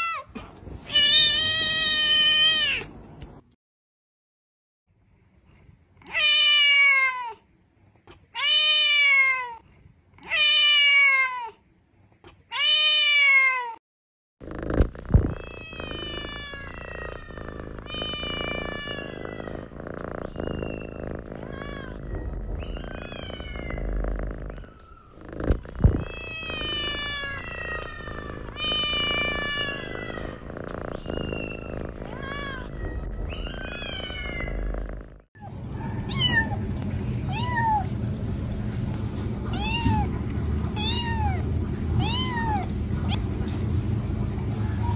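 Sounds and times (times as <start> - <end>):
kittens meowing: 15.2 - 25.3, 25.9 - 34.8, 35.4 - 36.7, 39.5 - 40.2, 40.8 - 42.7.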